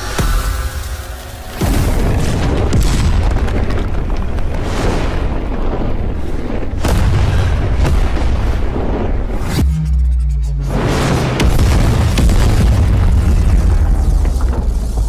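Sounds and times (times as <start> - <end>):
explosion blast: 1.5 - 9.9, 10.7 - 15.0.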